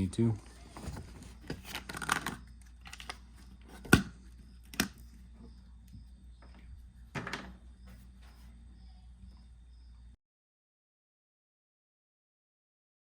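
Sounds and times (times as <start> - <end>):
faint steady hum: 0.0 - 10.2.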